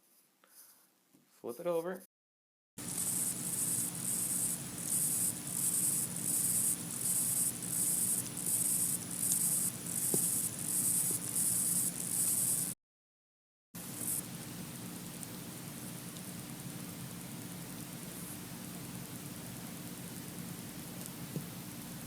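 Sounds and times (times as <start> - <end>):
high-pitched pulsing electronic hiss: 2.8 - 12.8, 13.8 - 14.4
steady low hum: 2.8 - 12.8.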